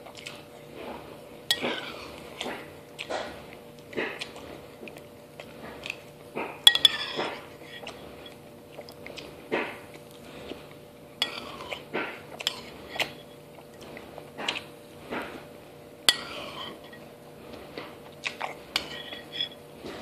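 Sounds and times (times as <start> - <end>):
crunchy chewing: 0.0 - 15.7, 16.3 - 20.0
metal spoon clinking on bowl: 6.6 - 7.9, 11.2 - 11.5, 16.1 - 17.0, 18.8 - 19.6.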